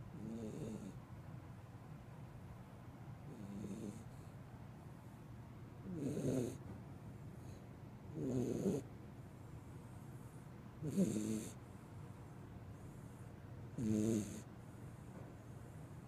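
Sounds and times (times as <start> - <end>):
puppy snoring: 0.1 - 1.0, 3.2 - 4.3, 5.8 - 6.6, 7.4 - 8.9, 9.7 - 11.7, 12.8 - 16.0.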